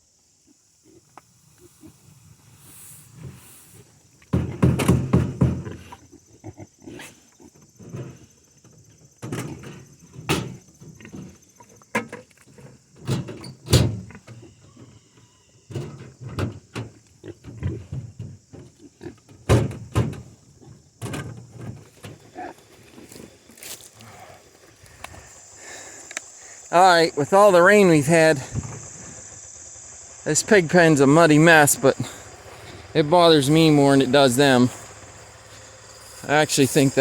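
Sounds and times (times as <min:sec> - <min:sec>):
pigs grunting: 0:05.4 - 0:07.6, 0:22.2 - 0:23.0, 0:24.0 - 0:29.3, 0:30.3 - 0:37.0.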